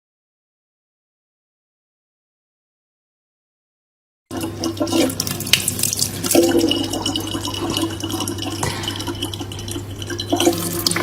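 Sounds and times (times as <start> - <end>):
tap water running: 4.3 - 11.0
steady low hum: 5.3 - 11.0.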